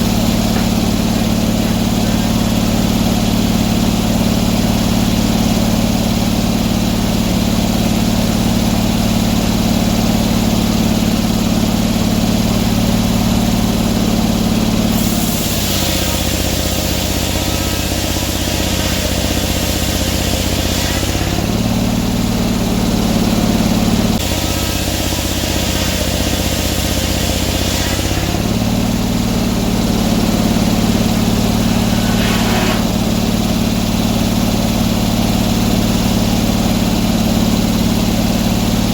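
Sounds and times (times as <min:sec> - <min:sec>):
sawmill engine running: 0:00.0 - 0:38.9
loud hiss of cutting: 0:14.9 - 0:21.5, 0:24.2 - 0:28.4, 0:29.8 - 0:33.5.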